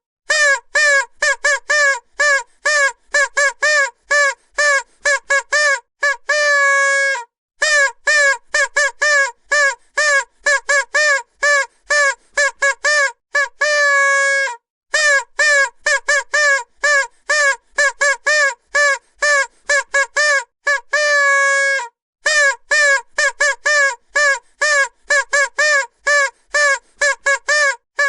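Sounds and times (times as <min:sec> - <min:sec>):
vuvuzela blasts: 0:00.3 - 0:28.0.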